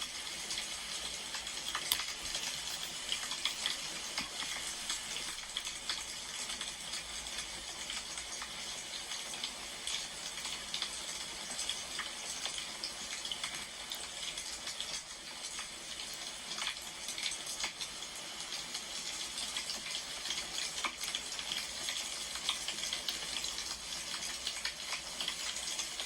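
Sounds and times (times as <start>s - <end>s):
wood fire crackling: 0.3s - 7.0s.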